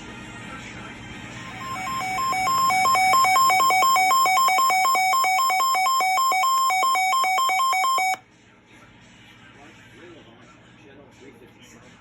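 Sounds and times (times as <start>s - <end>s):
electronic two-tone warble alarm: 1.4s - 8.2s.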